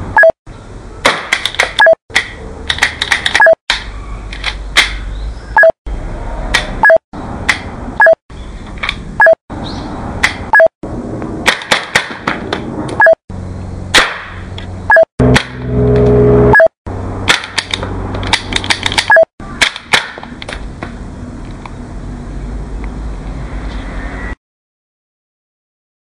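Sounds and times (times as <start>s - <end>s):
brief beep tone: 0.2s - 0.4s, 5.6s - 5.8s, 6.8s - 7.0s, 8.0s - 8.2s, 9.2s - 9.4s, 13.0s - 13.2s, 14.9s - 16.8s
cap gun bangs: 13.9s - 14.4s.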